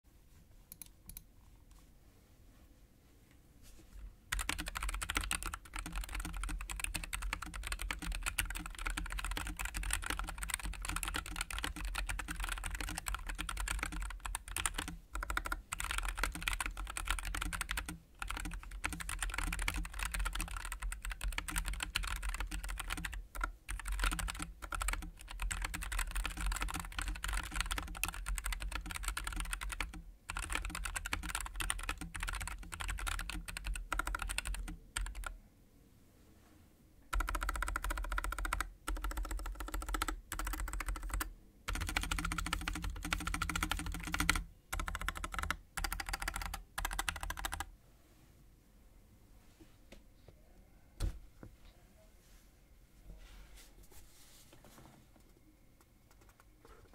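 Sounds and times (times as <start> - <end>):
keyboard typing: 4.3 - 35.4, 37.1 - 47.7, 56.1 - 56.9.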